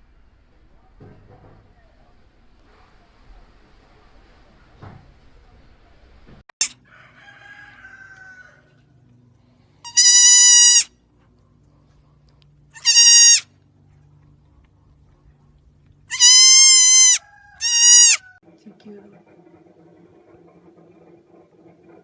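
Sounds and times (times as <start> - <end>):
animal high piercing cry: 9.9 - 10.9, 12.8 - 13.4, 16.1 - 18.3.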